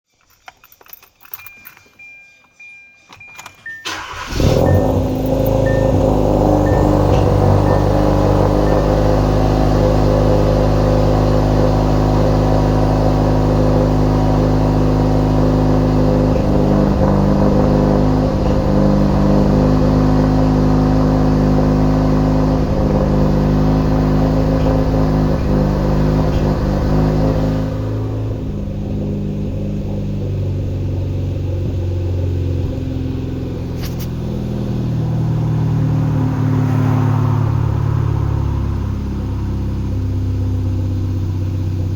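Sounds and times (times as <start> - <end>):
engine chirping: 0.1 - 41.9
car engine running: 3.0 - 41.9.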